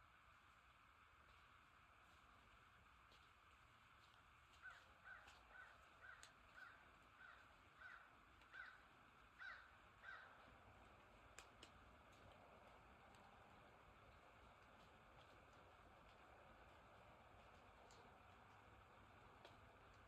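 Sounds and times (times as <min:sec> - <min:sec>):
sharp ticks: 0:04.0 - 0:20.0
faint harsh bird calls: 0:04.6 - 0:10.6.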